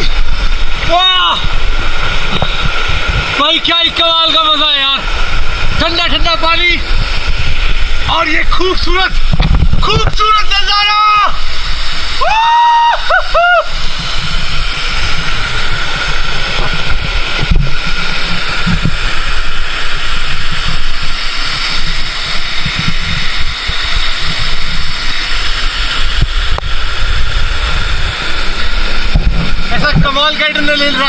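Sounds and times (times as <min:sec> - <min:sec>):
waterfall rushing: 0:00.0 - 0:31.0
wind rumble on microphone: 0:00.0 - 0:31.0.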